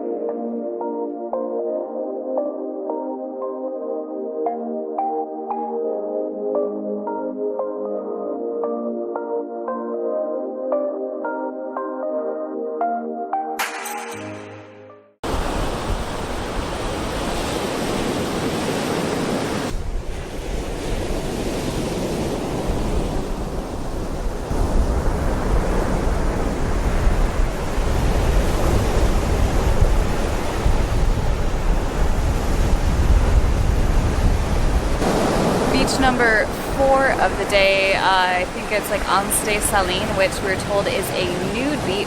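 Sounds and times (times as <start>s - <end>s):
surf washing on beach: 15.2s - 42.0s
wind rumbling on microphone: 15.2s - 42.0s.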